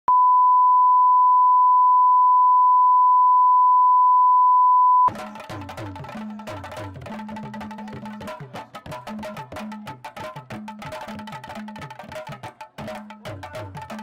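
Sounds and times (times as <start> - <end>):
steady test tone beep: 0.0 - 5.1
percussion-led music with drums: 5.1 - 14.0.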